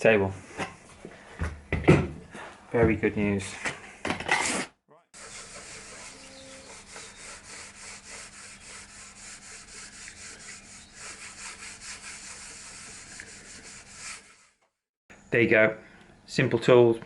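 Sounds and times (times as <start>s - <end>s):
wood sanded by hand: 5.2s - 14.6s.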